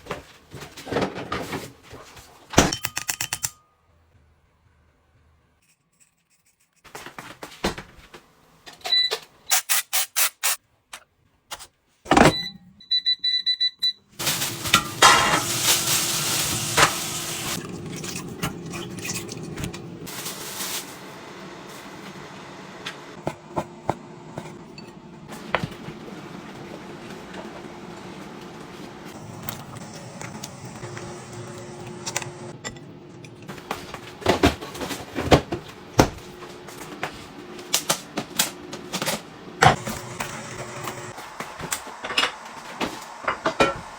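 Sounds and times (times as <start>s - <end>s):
appliance beeping: 12.1s - 17.8s, 27.8s - 34.6s, 39.6s - 41.2s
appliance running with hum and hiss: 14.2s - 43.9s.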